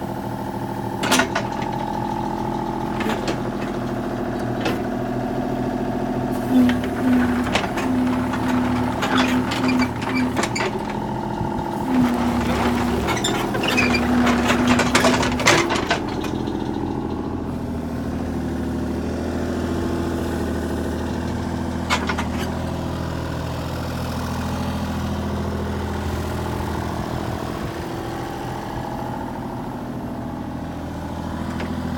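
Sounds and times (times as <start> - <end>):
excavator diesel engine running: 0.0 - 31.9
metal clanks and clatter: 1.0 - 2.1, 2.9 - 5.0, 6.5 - 11.1, 11.8 - 17.2, 21.8 - 22.6.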